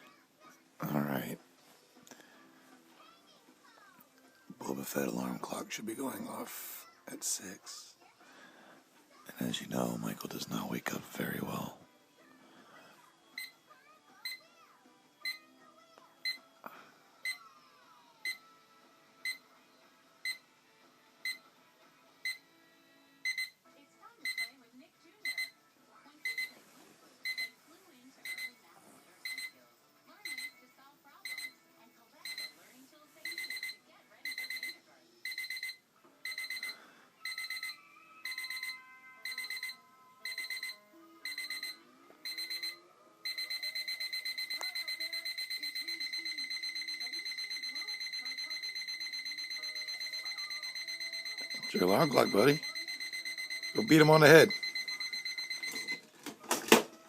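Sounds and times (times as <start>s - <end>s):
alarm clock beeping: 14.2s - 14.5s, 16.2s - 16.4s, 22.2s - 22.4s, 23.2s - 23.6s, 24.2s - 24.5s, 25.2s - 25.6s, 26.2s - 26.5s, 27.2s - 27.6s, 28.2s - 28.6s, 29.2s - 29.6s, 30.2s - 30.6s, 31.2s - 31.6s, 32.2s - 32.6s, 33.2s - 56.0s.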